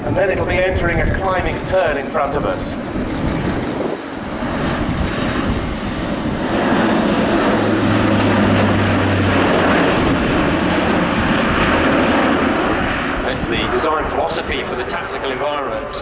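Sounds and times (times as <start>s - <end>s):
low propeller hum: 0.0s - 16.0s
turboprop aircraft droning: 0.0s - 16.0s.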